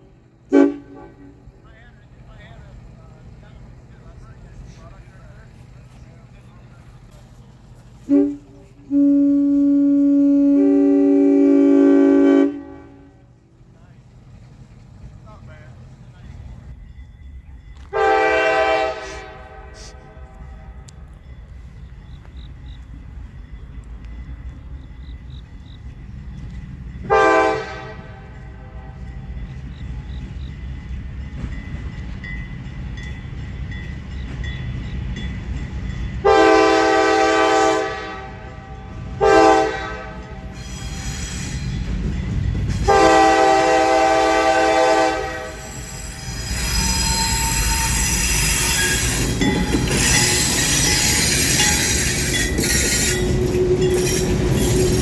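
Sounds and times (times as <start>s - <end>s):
locomotive air horn blasts: 0.0s - 1.5s, 8.0s - 13.3s, 17.9s - 20.9s, 27.0s - 29.3s, 36.2s - 41.2s, 42.8s - 55.0s
train rumbling past: 0.0s - 55.0s
high-pitched wheel squeal: 40.5s - 41.9s, 45.4s - 55.0s.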